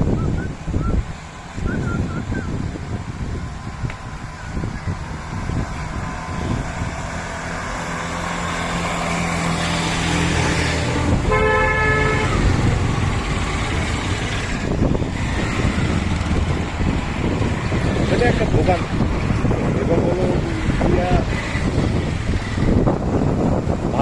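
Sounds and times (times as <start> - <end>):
vehicle engines rumbling: 0.0 - 24.0
vehicle horn: 11.0 - 12.9.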